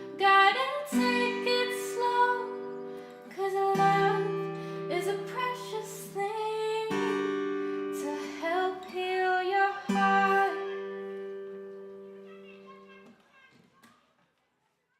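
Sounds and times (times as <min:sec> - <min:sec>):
woman singing: 0:00.0 - 0:11.2
strummed acoustic guitar: 0:00.0 - 0:13.1.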